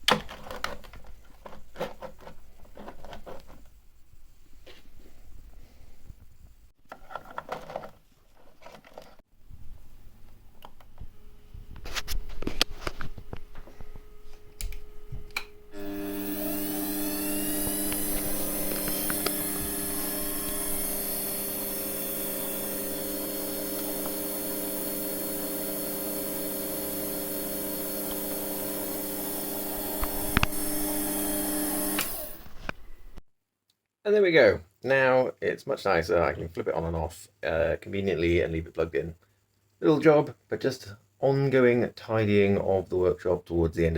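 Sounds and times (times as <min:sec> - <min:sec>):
small electric motor whining: 0:13.7 - 0:33.2.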